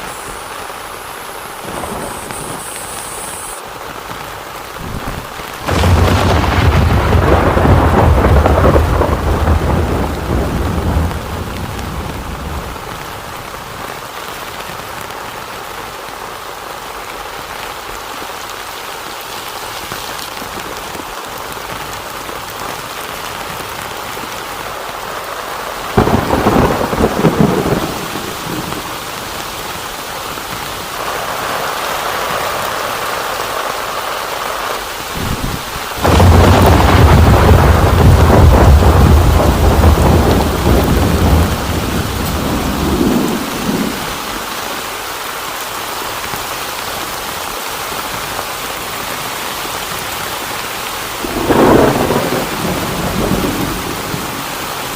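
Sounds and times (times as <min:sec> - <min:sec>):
heavy rain: 0:00.0 - 0:54.9
thunder: 0:04.8 - 0:13.0, 0:26.0 - 0:29.0, 0:35.1 - 0:44.5, 0:51.2 - 0:54.5.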